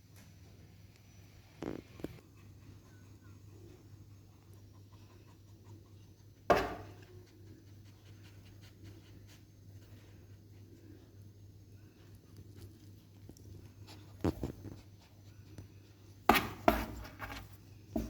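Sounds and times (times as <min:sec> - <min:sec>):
kittens tapping and scratching: 0:12.1 - 0:18.0.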